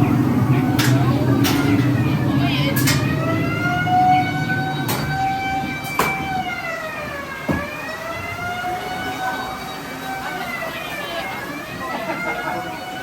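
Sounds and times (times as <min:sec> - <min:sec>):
siren wailing: 0:00.0 - 0:13.0.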